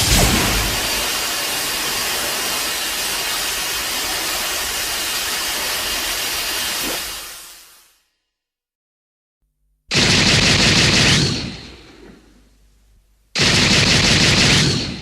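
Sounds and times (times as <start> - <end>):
rushing hiss: 0.0 - 8.0.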